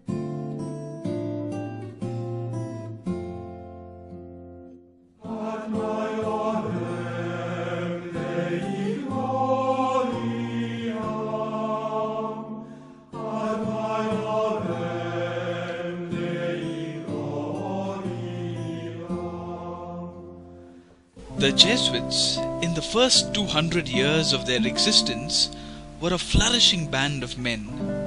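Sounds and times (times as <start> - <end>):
voices chanting together: 5.2 - 22.5.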